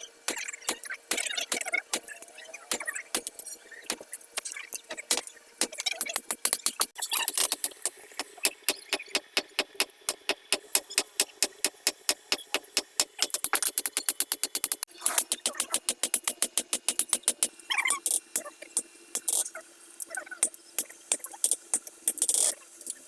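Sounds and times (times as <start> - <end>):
hammer striking steel on anvil: 0.3 - 13.5.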